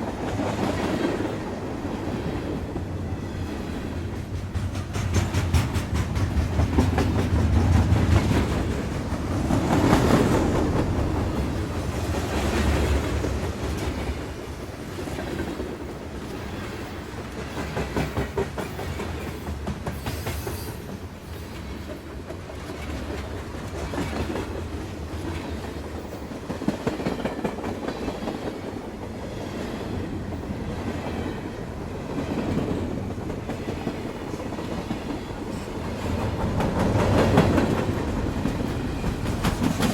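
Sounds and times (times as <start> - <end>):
train rumbling along track: 0.0 - 39.9
wheels clacking over rail joints: 2.2 - 14.4, 32.2 - 39.9.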